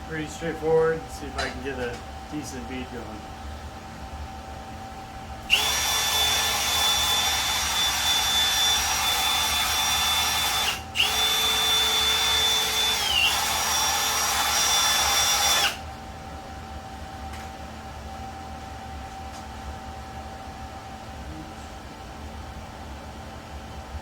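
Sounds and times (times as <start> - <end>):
welding arc hissing and whining: 5.5 - 15.8.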